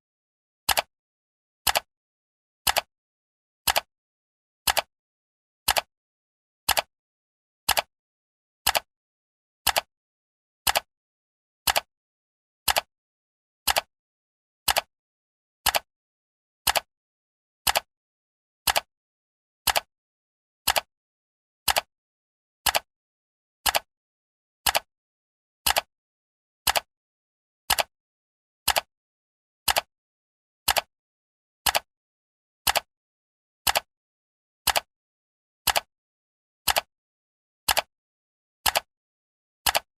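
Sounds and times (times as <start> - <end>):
clock ticking: 1.7 - 1.9, 2.7 - 2.9, 4.7 - 4.9, 5.7 - 5.9, 9.7 - 9.9, 11.7 - 11.9, 14.7 - 14.9, 15.7 - 15.9, 17.7 - 17.9, 19.7 - 19.9, 20.7 - 20.9, 22.6 - 22.9, 24.6 - 24.9, 27.7 - 27.9, 29.7 - 29.9, 30.7 - 30.9, 31.7 - 31.9, 32.7 - 32.9, 34.7 - 34.9, 35.7 - 35.9, 36.7 - 36.9, 37.7 - 37.9, 38.6 - 38.9, 39.6 - 39.9.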